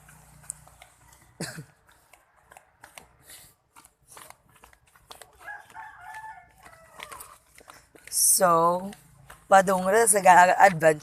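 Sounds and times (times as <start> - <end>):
rooster crowing: 5.4 - 7.4.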